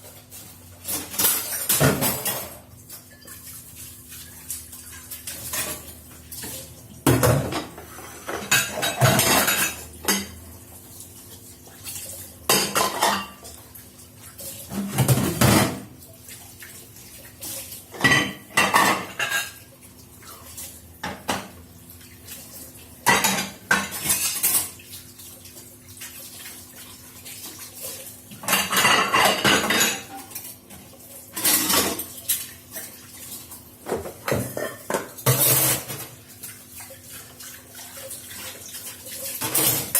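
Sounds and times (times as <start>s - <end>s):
dishes and cutlery clattering: 0.8s - 3.3s, 5.4s - 10.4s, 12.5s - 13.5s, 14.7s - 15.9s, 17.9s - 19.7s, 23.0s - 24.8s, 28.3s - 30.5s, 31.3s - 33.0s, 33.8s - 36.2s, 39.2s - 39.9s.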